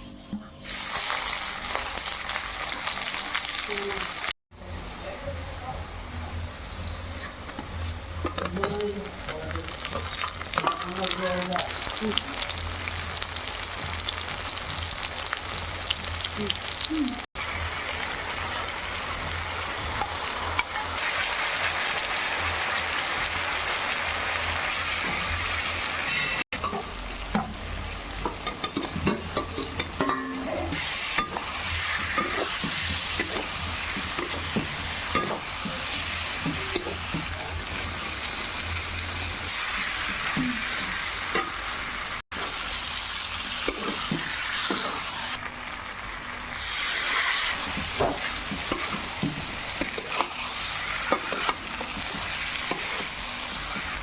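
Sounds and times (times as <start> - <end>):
curry sizzling in oil: 0.7 - 4.4, 6.6 - 54.0
spatula scraping a pan: 6.7 - 8.4, 46.6 - 54.0.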